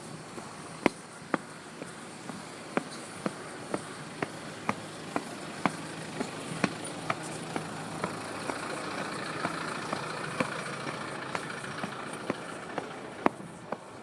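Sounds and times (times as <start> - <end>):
steady background hum: 0.0 - 14.0
footsteps walking: 0.3 - 14.0.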